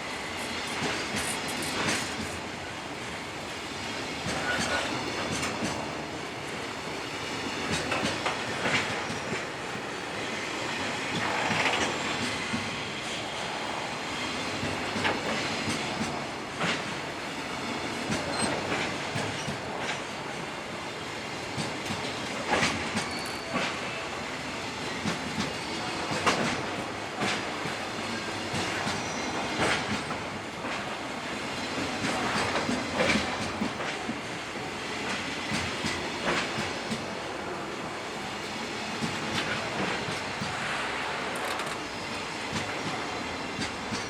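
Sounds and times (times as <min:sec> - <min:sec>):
train wheels clattering over rail joints: 0:00.8 - 0:02.4, 0:04.2 - 0:06.6, 0:07.5 - 0:09.9, 0:18.0 - 0:20.2, 0:21.5 - 0:24.0, 0:25.0 - 0:31.0, 0:31.7 - 0:34.3, 0:35.0 - 0:37.1.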